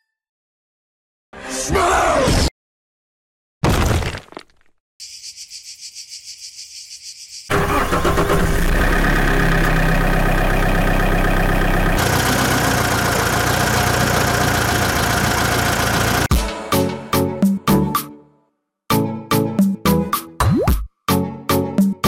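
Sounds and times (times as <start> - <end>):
tractor engine cranking: 7.5 - 16.3
tractor engine running: 7.5 - 16.3.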